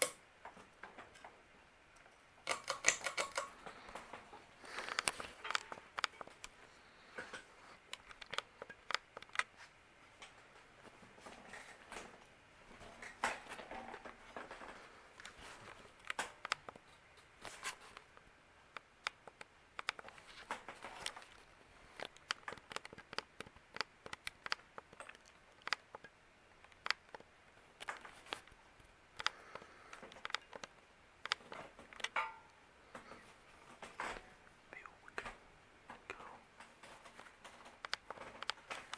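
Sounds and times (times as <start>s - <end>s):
faint background hum: 0.0s - 38.9s
light irregular clicks: 2.0s - 4.1s, 4.7s - 6.6s, 7.2s - 9.6s, 15.2s - 20.2s, 22.0s - 32.2s, 36.0s - 38.9s.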